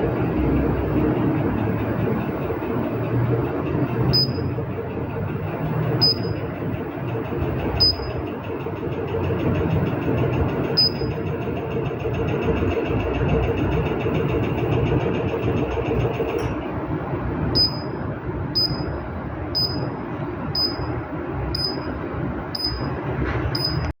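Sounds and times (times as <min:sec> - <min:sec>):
treadmill console beeping: 0:00.0 - 0:16.7, 0:17.4 - 0:24.0
treadmill motor whining: 0:00.0 - 0:24.0
fast high ticking: 0:00.1 - 0:16.5, 0:17.6 - 0:18.0, 0:18.6 - 0:19.0, 0:19.6 - 0:19.9, 0:20.6 - 0:22.0, 0:22.6 - 0:23.0.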